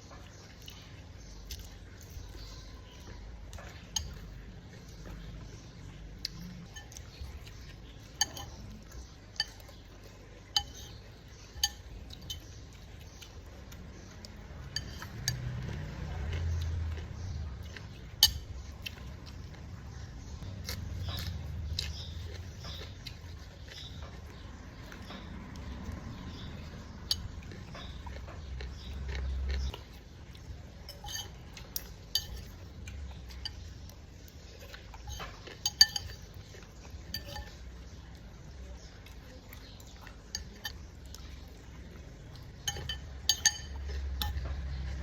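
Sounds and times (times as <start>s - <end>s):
soft eating noise: 0.0s - 45.0s
utensils clinking against dishes: 6.3s - 20.3s, 30.8s - 38.1s, 38.8s - 45.0s.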